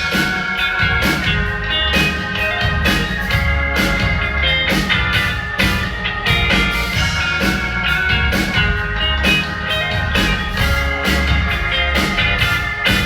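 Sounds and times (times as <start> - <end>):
live rock band playing: 0.0 - 13.0.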